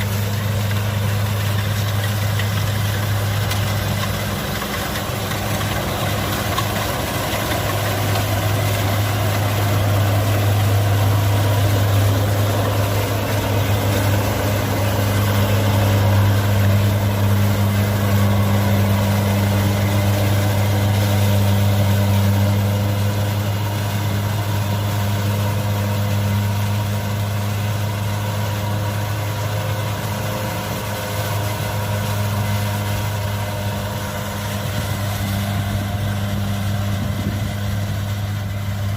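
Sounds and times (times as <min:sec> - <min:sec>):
combine harvester diesel engine: 0:00.0 - 0:38.9.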